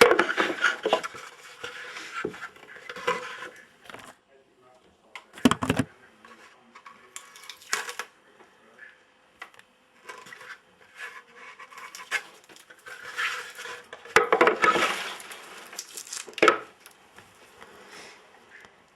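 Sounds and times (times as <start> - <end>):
clicks and clatter of small parts: 6.8 - 8.1, 11.8 - 17.0
scraping and rattling: 10.0 - 16.6.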